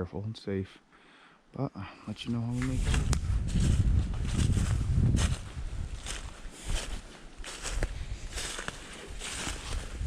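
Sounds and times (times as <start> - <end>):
footsteps through brush and leaves: 2.5 - 10.0.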